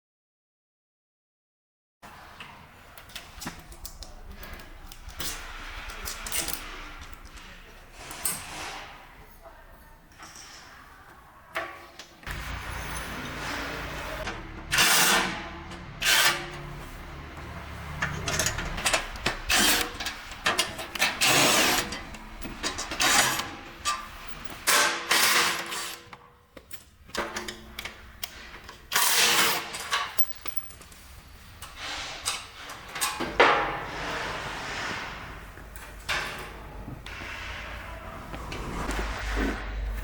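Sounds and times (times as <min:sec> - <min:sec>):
tools and parts clattering: 0:11.6 - 0:34.2.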